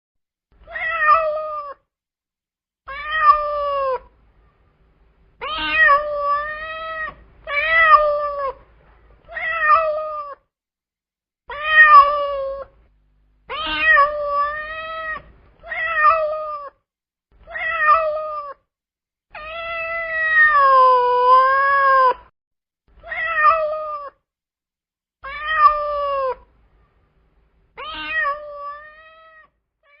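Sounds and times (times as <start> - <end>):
cat meowing: 0.6 - 1.9, 2.9 - 4.1, 5.4 - 8.6, 9.2 - 10.4, 11.5 - 12.8, 13.5 - 16.8, 17.4 - 18.7, 19.3 - 22.3, 23.0 - 24.2, 25.2 - 26.5, 27.8 - 30.0.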